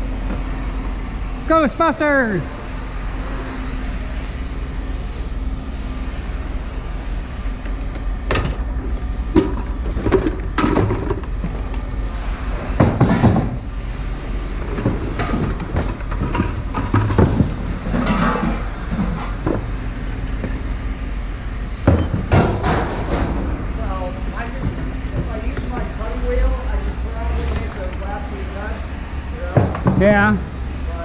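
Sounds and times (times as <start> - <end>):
low machinery hum: 0.0 - 31.0
scrap metal clanking: 14.7 - 19.7.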